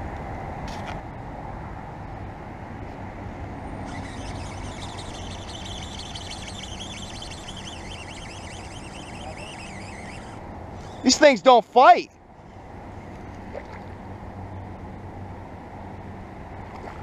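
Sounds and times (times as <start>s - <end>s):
road traffic rumble: 0.0s - 17.0s
high wavering chatter: 3.8s - 11.6s.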